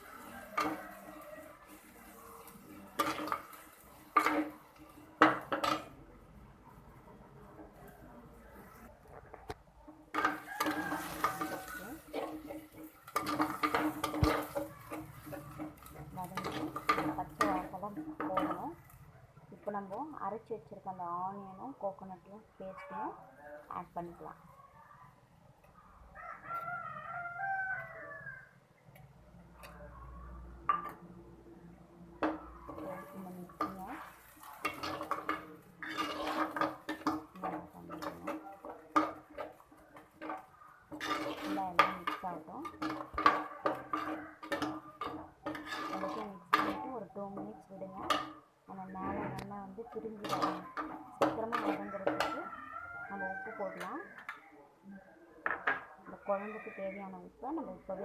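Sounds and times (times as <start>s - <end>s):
spoon clinking against pan: 0.0s - 6.0s, 10.1s - 19.0s, 32.2s - 48.4s, 49.9s - 54.4s
spoon stirring and scraping pan: 0.0s - 24.5s, 25.6s - 54.6s, 55.4s - 58.0s.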